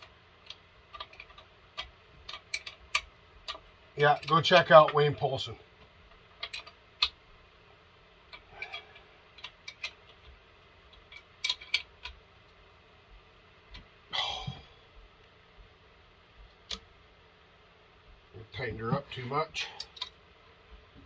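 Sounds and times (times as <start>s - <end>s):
tools clicking and tapping: 0.0s - 4.7s, 5.8s - 7.2s, 8.3s - 12.2s.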